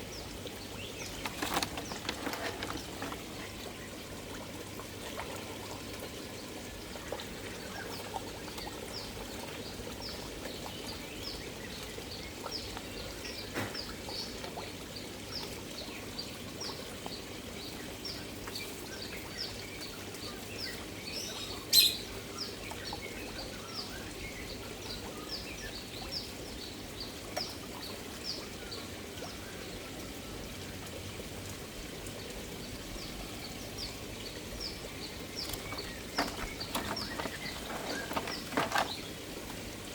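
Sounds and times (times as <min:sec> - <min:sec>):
pond water trickling: 0:00.0 - 0:39.9
small bird chirping: 0:21.3 - 0:22.0, 0:34.6 - 0:39.2.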